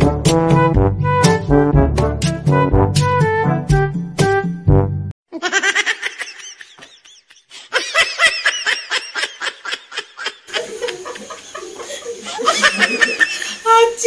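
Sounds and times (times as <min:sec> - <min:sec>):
soft laughter: 0:05.3 - 0:13.7
high-pitched laughter: 0:05.3 - 0:14.0.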